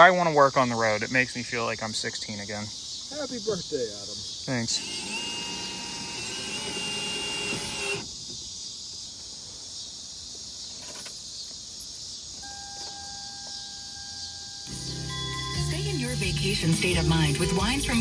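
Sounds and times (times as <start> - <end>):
crickets chirring: 0.0 - 16.1
faint mechanical whir: 4.7 - 8.1.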